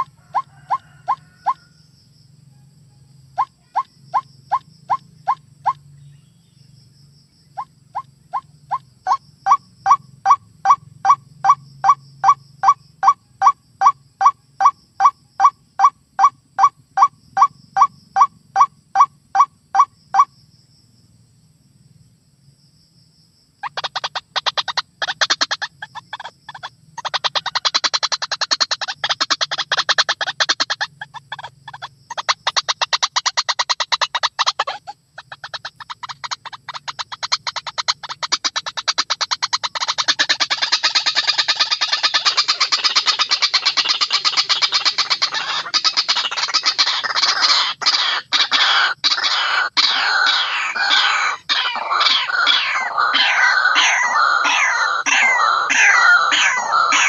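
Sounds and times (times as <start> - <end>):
waterhen repeated calls: 0.0 - 1.8, 3.4 - 5.8, 7.6 - 20.3, 23.6 - 57.0
waterhen chattering chorus: 23.7 - 57.0.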